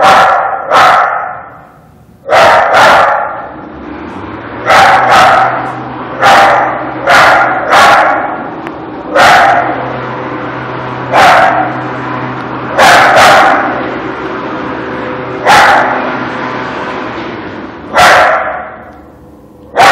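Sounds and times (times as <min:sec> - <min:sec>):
dog barking: 0:00.0 - 0:01.5, 0:02.2 - 0:03.5, 0:04.6 - 0:08.4, 0:09.1 - 0:09.8, 0:11.1 - 0:11.8, 0:12.8 - 0:13.8, 0:15.4 - 0:16.1, 0:17.9 - 0:18.8
steady low hum: 0:01.3 - 0:19.9.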